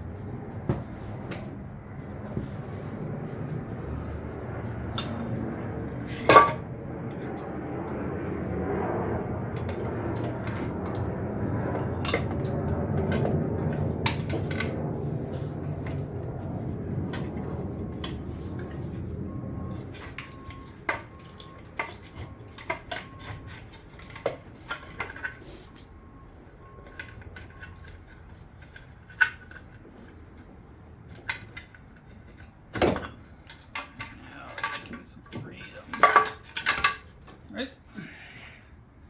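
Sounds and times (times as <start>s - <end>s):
metal tools clinking and clanking: 6.1s - 6.6s, 31.1s - 37.5s.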